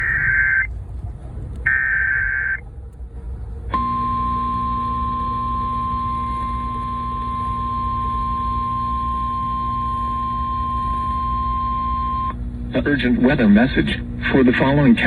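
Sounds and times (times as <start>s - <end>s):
shrill data tone bursts: 0.0s - 0.7s, 1.7s - 2.6s
steady attention tone: 0.0s - 0.8s, 1.7s - 2.6s, 3.7s - 15.0s.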